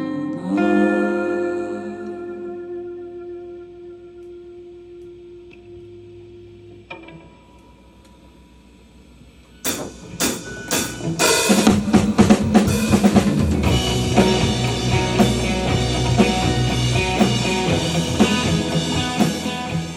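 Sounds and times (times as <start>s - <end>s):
drum kit hits: 9.7s - 19.9s
live rock band playing: 9.7s - 19.9s.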